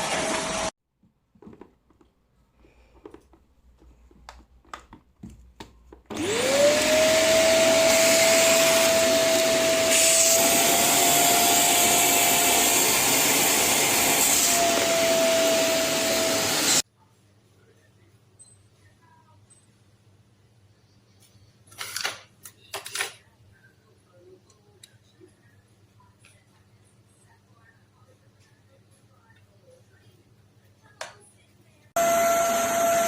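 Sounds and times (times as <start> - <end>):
vacuum cleaner motor whine: 0.0 - 0.7, 6.1 - 16.8, 32.0 - 33.0.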